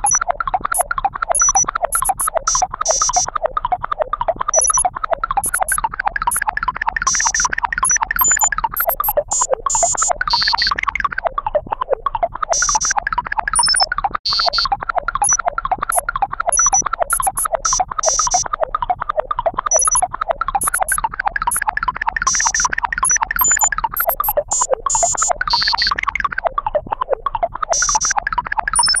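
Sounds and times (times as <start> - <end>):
electronic bleeps: 0.0 - 3.3, 4.5 - 6.4, 7.0 - 10.8, 12.5 - 18.5, 19.7 - 21.6, 22.3 - 26.3, 27.7 - 29.0
high-pitched electronic chirps: 0.0 - 3.3, 4.5 - 6.4, 7.0 - 11.1, 12.5 - 18.5, 19.7 - 21.6, 22.2 - 26.3, 27.7 - 29.0.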